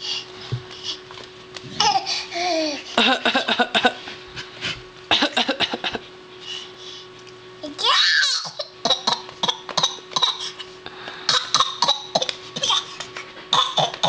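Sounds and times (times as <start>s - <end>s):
toddler coughing: 8.2s - 10.6s, 11.3s - 14.0s.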